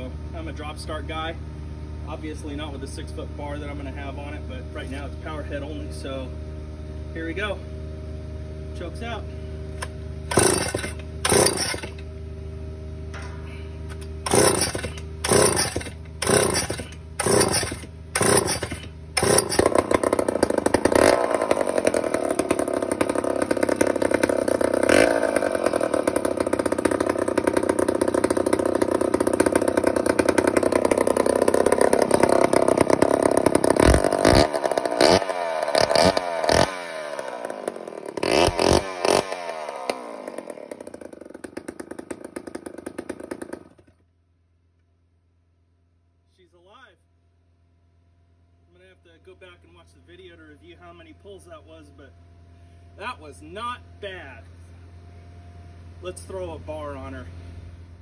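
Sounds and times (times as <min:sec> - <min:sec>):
chainsaw engine running: 0:00.0 - 0:44.0
starter cord yanks: 0:09.8 - 0:12.1, 0:13.1 - 0:36.9.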